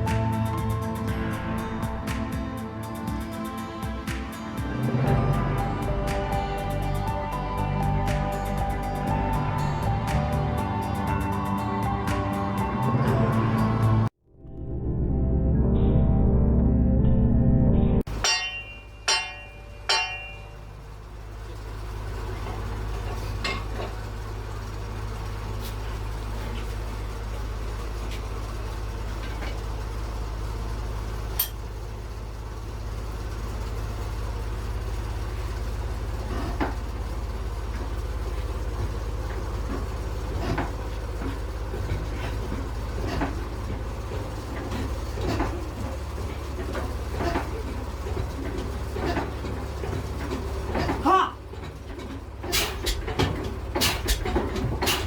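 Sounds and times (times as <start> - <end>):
diesel engine running: 0.0 - 55.0
metallic clinks and knocks: 31.4 - 31.6.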